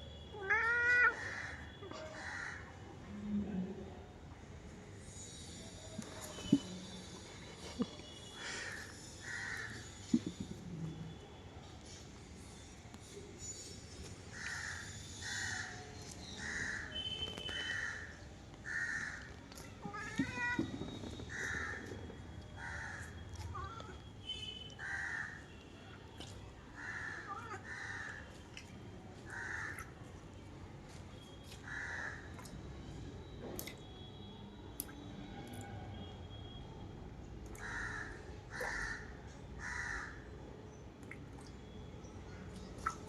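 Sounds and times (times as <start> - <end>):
crows cawing: 0.5 - 2.6, 8.4 - 9.9, 16.4 - 17.0, 17.7 - 19.3, 21.3 - 21.8, 22.6 - 23.8, 24.8 - 25.4, 26.8 - 28.3, 29.3 - 29.9, 31.6 - 32.2, 37.6 - 40.2.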